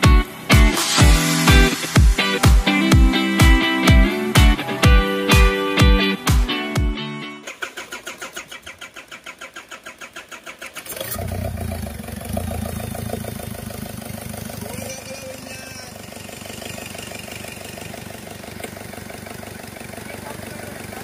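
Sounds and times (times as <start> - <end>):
diesel engine cranking: 7.2 - 21.0
diesel engine idling: 7.4 - 21.0.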